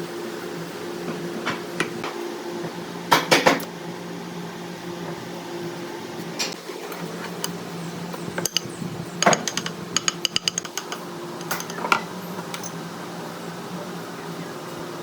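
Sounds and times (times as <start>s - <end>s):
sharp metallic clicks and clinks: 8.3s - 12.8s.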